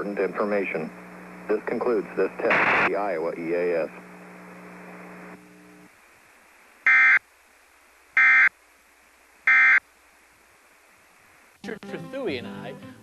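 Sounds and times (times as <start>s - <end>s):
digital data tone bursts: 6.9s - 7.2s, 8.2s - 8.5s, 9.5s - 9.8s.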